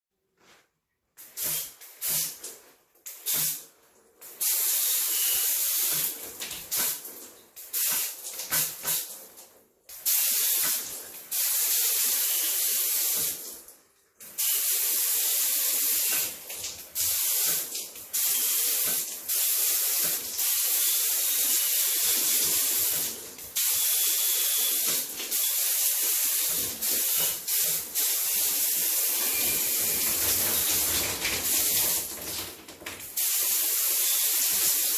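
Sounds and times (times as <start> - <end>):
water spraying from nozzle: 4.3 - 9.2, 14.4 - 32.5.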